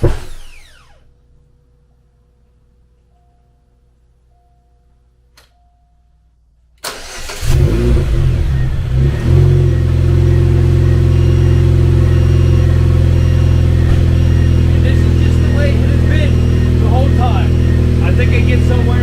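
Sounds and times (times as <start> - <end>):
car engine starting and idling: 6.8 - 19.0.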